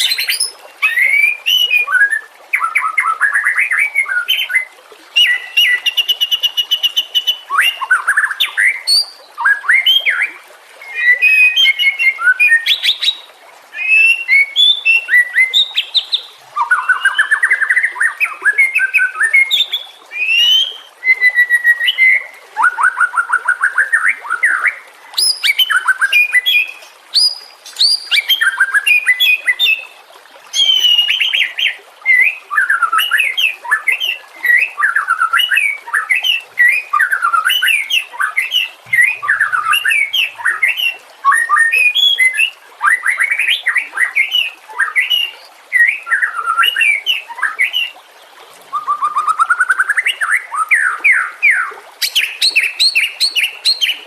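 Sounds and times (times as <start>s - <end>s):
bird singing: 13.8s - 29.8s, 30.6s - 42.5s.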